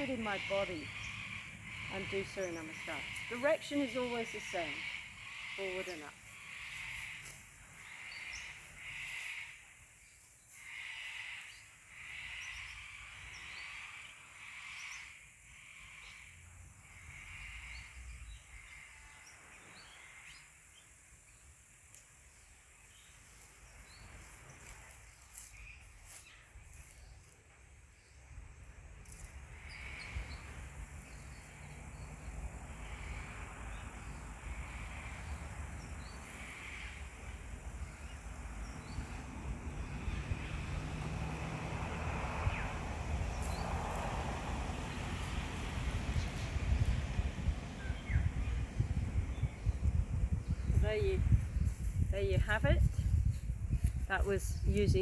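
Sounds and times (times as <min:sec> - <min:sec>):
birds making rough calls: 0:00.0 - 0:09.8, 0:29.4 - 0:51.4
wind rumbling on microphone: 0:23.6 - 0:55.0.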